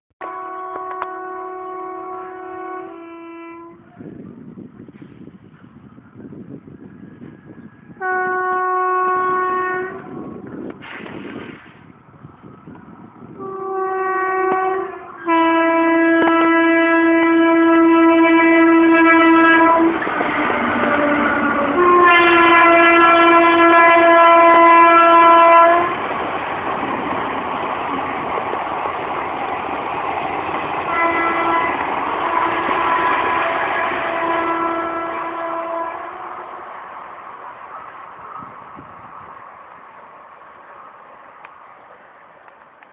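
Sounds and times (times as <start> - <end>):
locomotive horn blasts: 0.2 - 3.8, 8.0 - 10.5, 13.4 - 26.0, 30.9 - 36.4
train wheels rumbling on rails: 3.8 - 42.9.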